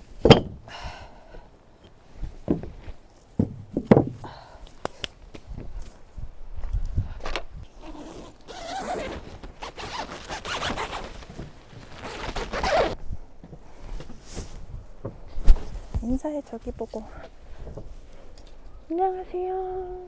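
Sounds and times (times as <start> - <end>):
zipper rasping: 7.7 - 13.0.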